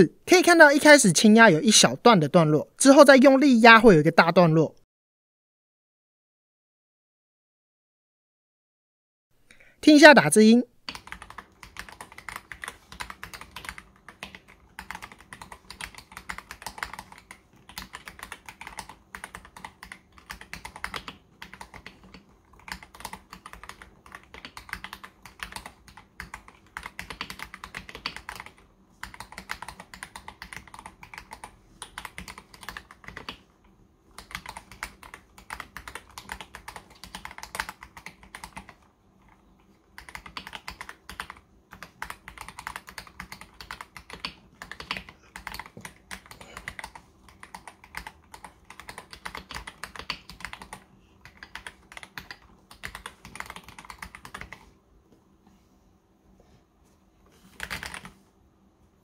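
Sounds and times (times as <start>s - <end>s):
mechanical keyboard typing: 10.9s - 33.5s, 34.1s - 54.7s, 57.5s - 58.2s.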